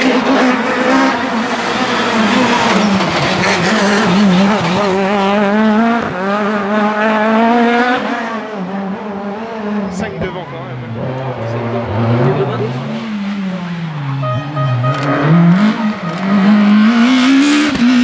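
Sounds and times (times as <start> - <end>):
car engine revving high: 10.8 - 18.0.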